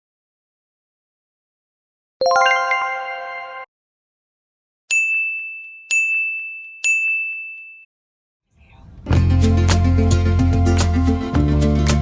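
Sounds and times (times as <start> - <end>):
high bell-like dings: 4.9 - 7.9.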